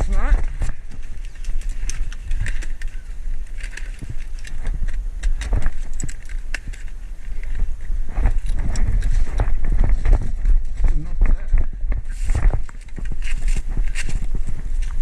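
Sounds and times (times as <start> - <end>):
gear clicking and rattling: 0.0 - 15.0
low rumble on microphone: 0.0 - 15.0
footsteps: 6.7 - 15.0.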